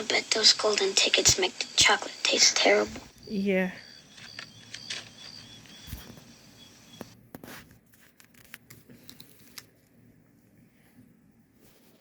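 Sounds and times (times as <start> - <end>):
faint handling clicks and rustles: 4.2 - 6.3, 7.3 - 12.0.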